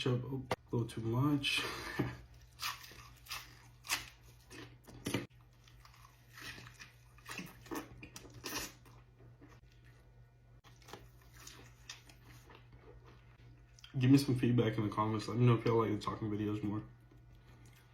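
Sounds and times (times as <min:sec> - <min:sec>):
person chewing food: 0:01.9 - 0:14.0, 0:17.0 - 0:17.9.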